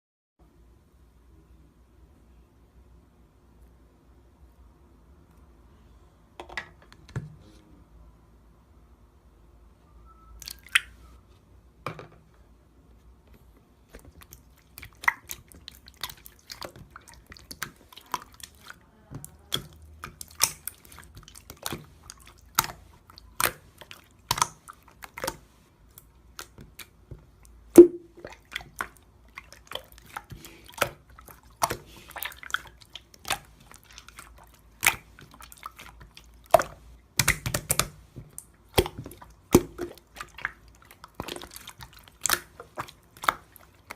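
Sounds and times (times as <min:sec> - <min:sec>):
wet clicks and snaps: 0:10.4 - 0:10.9, 0:19.5 - 0:22.8, 0:23.4 - 0:27.0, 0:30.8 - 0:43.9.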